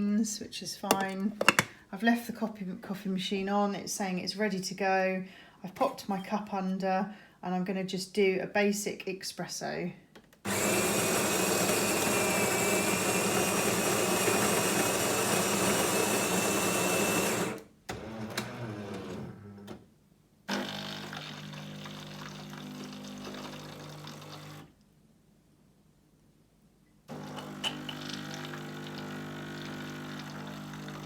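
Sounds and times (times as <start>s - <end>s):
coffee grinder running: 10.5s - 19.1s, 20.5s - 24.7s, 27.1s - 31.0s
pump humming: 27.1s - 31.0s.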